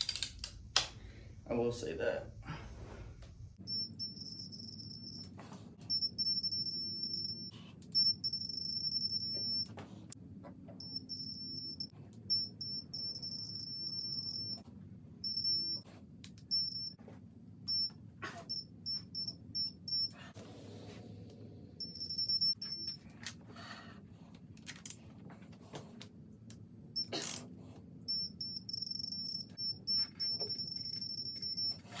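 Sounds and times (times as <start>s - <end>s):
high-pitched torque tool beeps: 3.6s - 5.3s, 5.9s - 9.7s, 10.8s - 14.6s, 15.2s - 15.8s, 16.5s - 17.0s, 17.7s - 17.9s, 18.5s - 20.2s, 21.8s - 23.0s, 28.1s - 31.9s.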